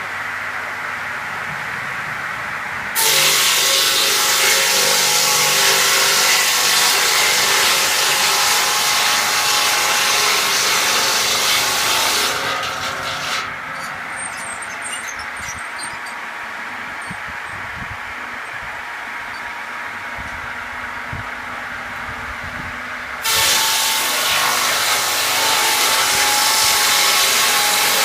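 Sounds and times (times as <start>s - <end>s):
sawmill cutting through wood: 3.0s - 17.2s, 23.2s - 28.0s.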